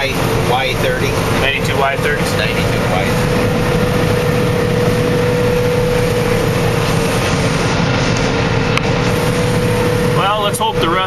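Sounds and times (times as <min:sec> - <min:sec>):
combine harvester running: 0:00.0 - 0:11.0
steady whine: 0:00.0 - 0:11.0.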